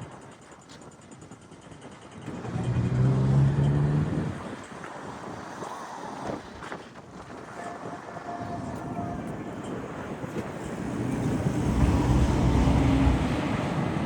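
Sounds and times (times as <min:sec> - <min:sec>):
outdoor background noise: 0:00.0 - 0:14.0
vehicle engine passing by: 0:02.3 - 0:04.4, 0:10.9 - 0:14.0.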